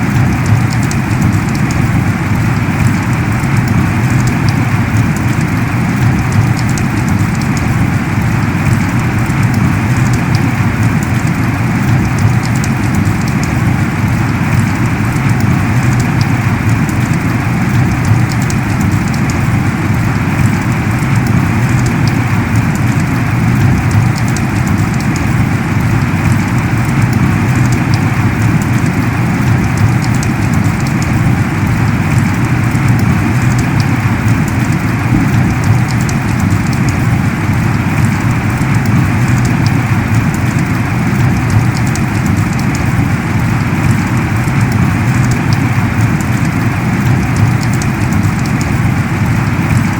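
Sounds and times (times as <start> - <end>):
heavy rain falling: 0.0 - 49.9
raindrops ticking: 0.0 - 49.9.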